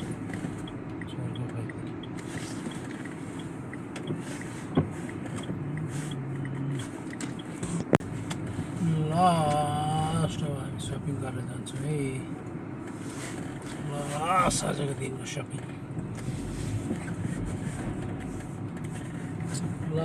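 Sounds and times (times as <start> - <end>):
car engine and road noise: 0.0 - 20.0
sharp clicks: 0.2 - 8.4
person speaking: 5.4 - 8.0.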